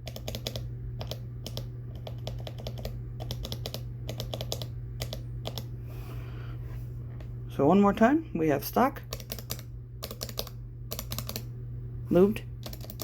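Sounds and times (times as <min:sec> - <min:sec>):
mechanical keyboard typing: 0:00.0 - 0:05.7, 0:09.1 - 0:11.5, 0:12.6 - 0:13.0.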